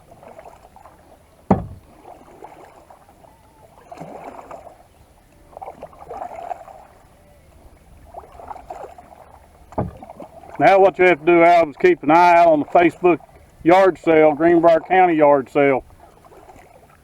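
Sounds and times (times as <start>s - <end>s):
paddle splashing in water: 0.0s - 17.0s
sharp knock: 1.5s - 1.9s.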